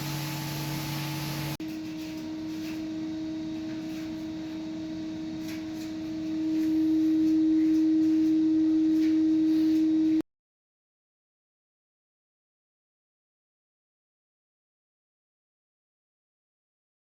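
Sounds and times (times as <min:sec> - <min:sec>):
steady hum: 0:00.0 - 0:10.2.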